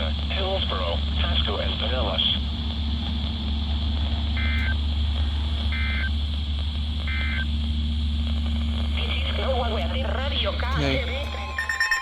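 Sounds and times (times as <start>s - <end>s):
low hum: 0.0s - 12.0s
two-tone data bursts: 7.0s - 7.5s, 10.6s - 12.0s.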